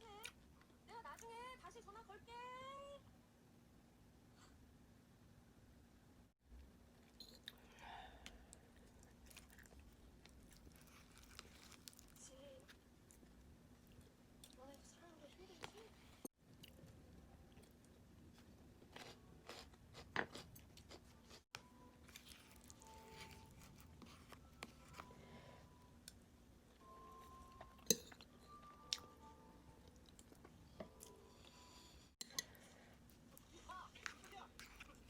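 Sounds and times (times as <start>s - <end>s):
person chewing and crunching: 8.3s - 12.2s, 15.6s - 25.3s, 32.3s - 35.0s.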